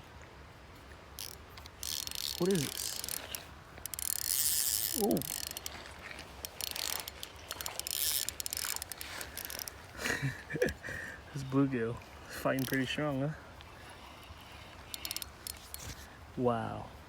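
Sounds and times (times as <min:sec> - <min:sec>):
fishing reel whirring and clicking: 0:01.2 - 0:10.0, 0:12.2 - 0:16.1.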